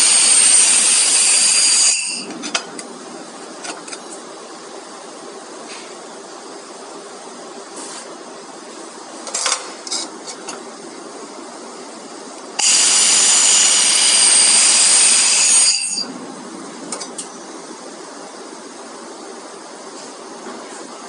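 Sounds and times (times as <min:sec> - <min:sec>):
laser welding hiss with whine: 0:00.0 - 0:02.3, 0:12.5 - 0:16.2.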